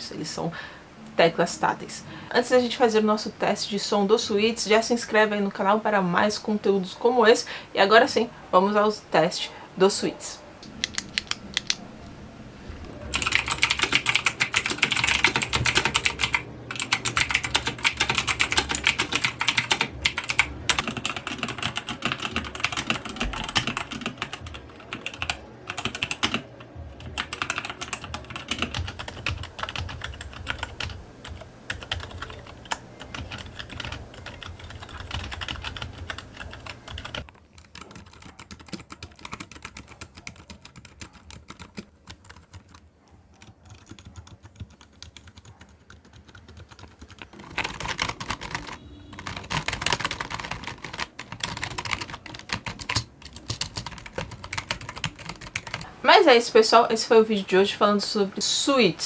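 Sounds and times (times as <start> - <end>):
fast typing on mechanical keyboard: 10.6 - 11.9, 12.9 - 56.2.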